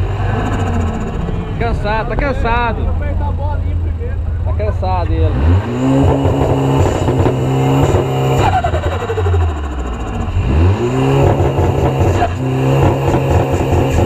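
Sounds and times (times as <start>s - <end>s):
car engine revving: 0.0s - 14.0s.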